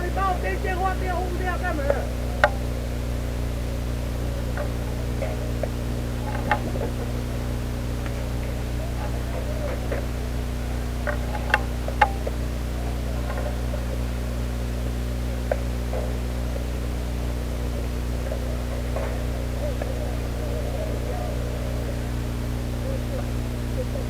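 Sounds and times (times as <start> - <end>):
low electrical hum with hiss: 0.0 - 24.0
sharp clicks: 4.1 - 13.6.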